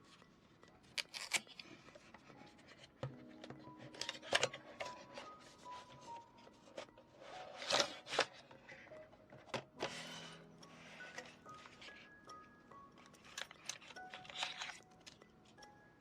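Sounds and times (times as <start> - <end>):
soft background music: 0.0 - 16.0
packaging clicking and rustling: 0.1 - 15.8.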